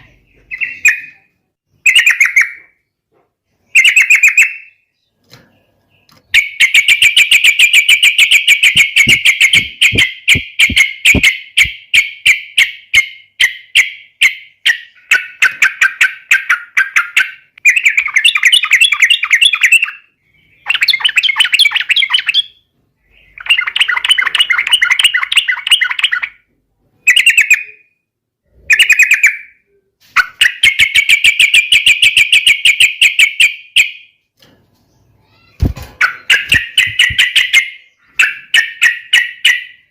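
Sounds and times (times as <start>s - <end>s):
bulbul singing chattering phrases: 6.7s - 11.7s.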